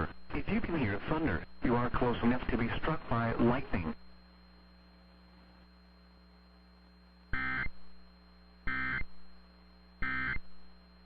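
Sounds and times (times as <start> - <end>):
faint steady hum: 0.0 - 11.0
buzzy digital data bursts: 7.3 - 8.0, 8.6 - 9.3, 10.0 - 11.0.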